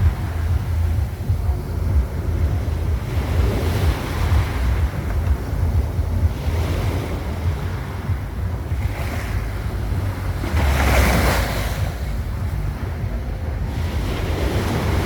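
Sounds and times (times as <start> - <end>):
sea waves washing onto shore: 0.0 - 15.0
wind buffeting microphone: 0.0 - 15.0.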